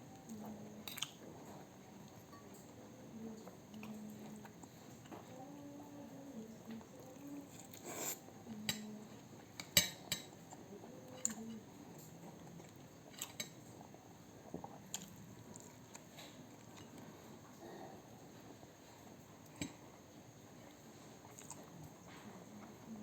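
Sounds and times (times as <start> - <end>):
cutlery clinking against plate: 9.6 - 10.4.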